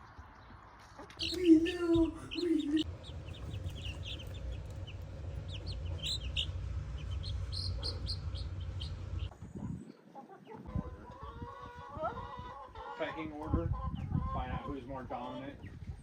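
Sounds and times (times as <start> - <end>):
chickens clucking: 1.0 - 16.0
low rumble: 1.2 - 9.8.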